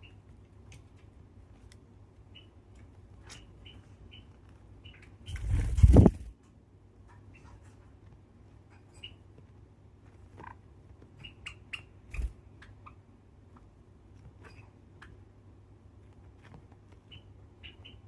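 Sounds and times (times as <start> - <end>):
sparrows chirping softly: 0.0 - 0.3, 2.2 - 6.1, 8.7 - 9.3, 11.2 - 13.1, 17.0 - 18.0
small clicks and taps: 0.3 - 1.9.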